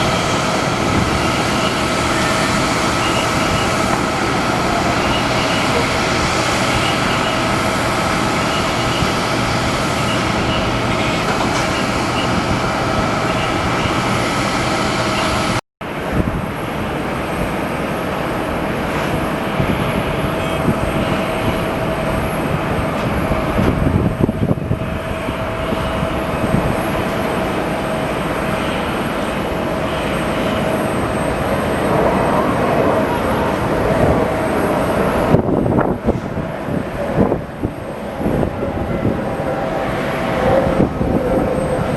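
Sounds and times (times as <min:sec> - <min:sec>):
jet engines roaring: 0:00.0 - 0:41.9
whining tone: 0:19.0 - 0:41.9.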